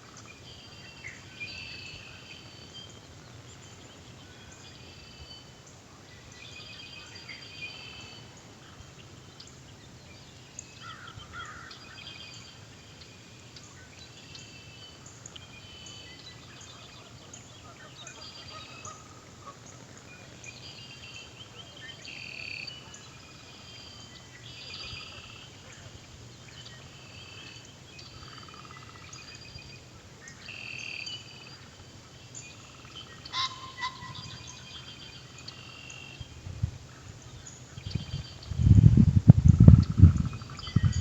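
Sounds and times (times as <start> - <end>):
birds chirping and trilling: 30.3 - 41.0
loud bird call: 33.3 - 34.6
faint low rumble: 36.2 - 41.0.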